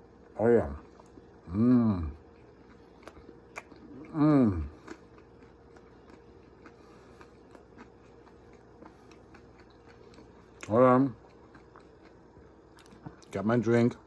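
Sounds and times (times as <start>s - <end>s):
man's wordless drawn-out vocal: 4.0s - 4.8s.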